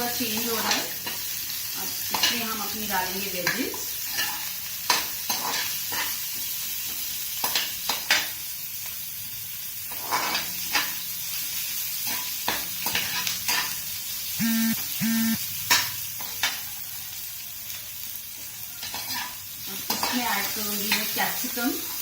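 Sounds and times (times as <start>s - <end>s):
onions sizzling in a pan: 0.0s - 22.0s
spatula scraping a pan: 3.7s - 8.4s, 9.8s - 11.1s, 11.9s - 13.8s, 18.8s - 22.0s
short low tones: 14.4s - 15.4s.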